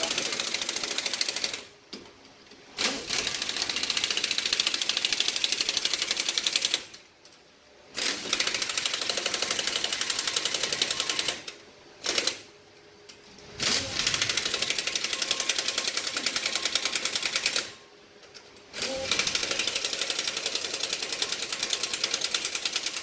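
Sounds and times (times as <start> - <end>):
pneumatic impact wrench rattling: 2.8 - 7.0, 7.9 - 12.5, 13.6 - 17.8, 18.7 - 23.0.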